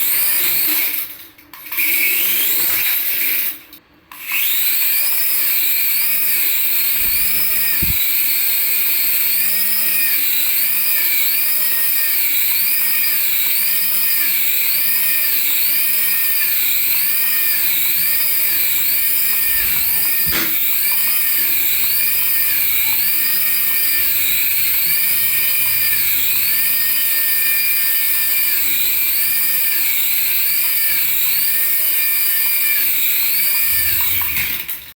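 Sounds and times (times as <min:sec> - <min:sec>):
toy warbling siren tone: 0:13.9 - 0:32.5.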